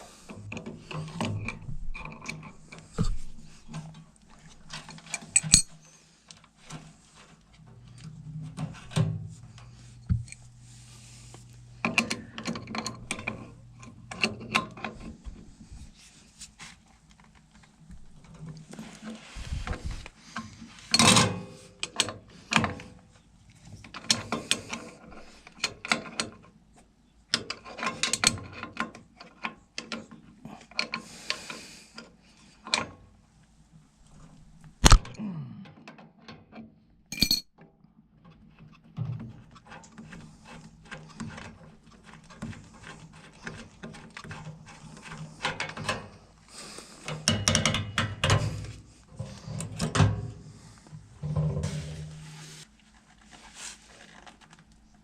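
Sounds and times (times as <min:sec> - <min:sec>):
low steady hum: 0:00.0 - 0:20.7
metal tool clicks and clanks: 0:04.8 - 0:05.8, 0:34.8 - 0:35.2, 0:37.1 - 0:37.6, 0:47.1 - 0:48.6.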